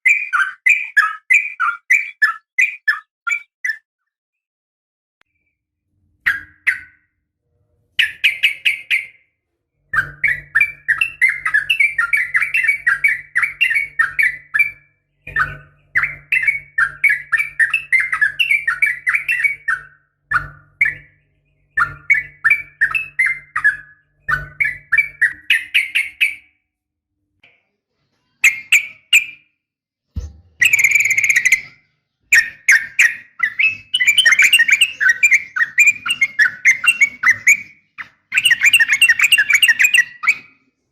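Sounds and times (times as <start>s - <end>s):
bulbul singing rapid notes: 30.6s - 37.7s.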